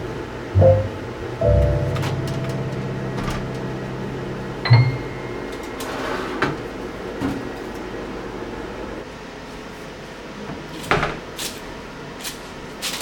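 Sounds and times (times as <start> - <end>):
microwave oven humming: 0.0 - 6.1.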